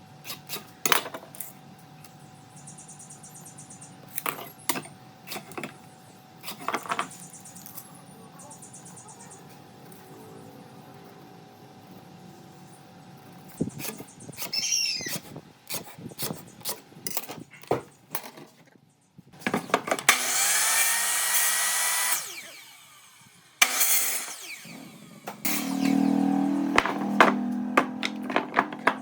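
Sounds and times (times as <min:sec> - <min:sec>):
power tool running: 0:20.0 - 0:29.0
knocks of wood being handled: 0:26.7 - 0:29.0.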